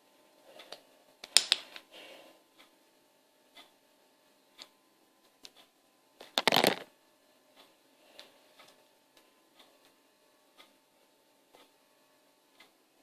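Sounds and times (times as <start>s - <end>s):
toys clattering: 6.3s - 6.9s
toys clicking and knocking: 6.3s - 6.9s.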